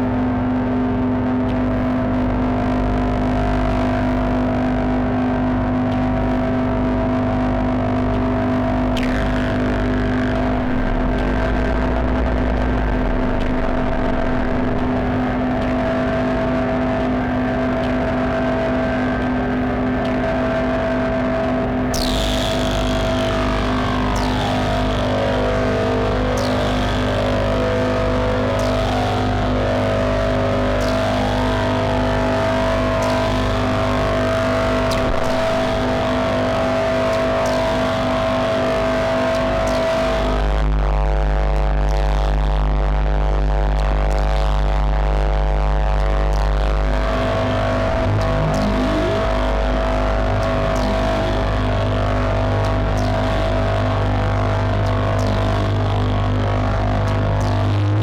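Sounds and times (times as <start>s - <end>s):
grainy noise layer: 0.0s - 58.0s
synthesizer drone chord: 1.7s - 40.6s, 43.4s - 58.0s
hissing noise sweep falling: 9.0s - 15.5s, 47.2s - 51.6s
tone gliding downward: 10.3s - 15.4s, 46.8s - 51.8s.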